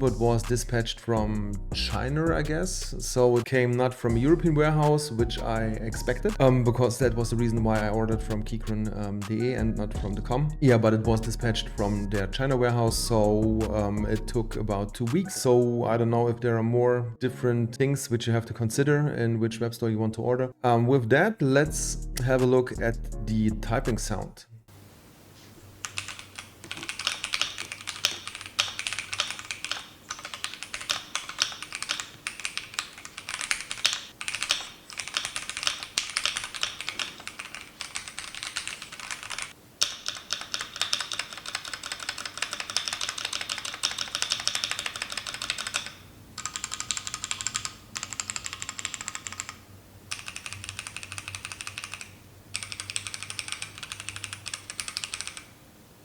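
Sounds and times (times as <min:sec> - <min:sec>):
mechanical keyboard typing: 0:25.8 - 0:55.6.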